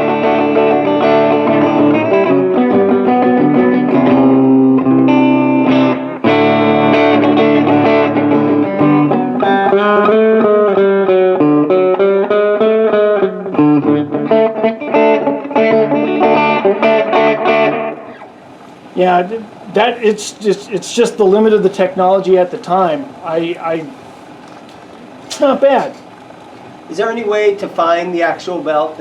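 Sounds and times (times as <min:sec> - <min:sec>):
electric guitar with tape delay: 0:00.0 - 0:29.0.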